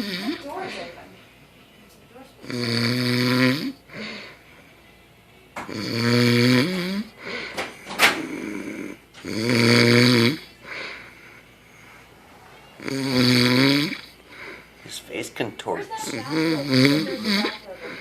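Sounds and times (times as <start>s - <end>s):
man snoring loudly: 0.0s - 0.4s, 2.4s - 4.1s, 5.7s - 7.1s, 8.2s - 10.5s, 12.8s - 14.2s, 16.0s - 17.6s.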